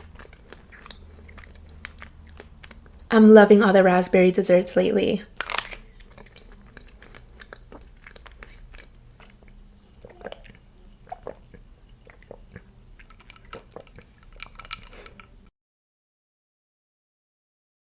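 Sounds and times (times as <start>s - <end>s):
close chewing and mouth clicks: 0.0s - 3.1s, 5.3s - 15.5s.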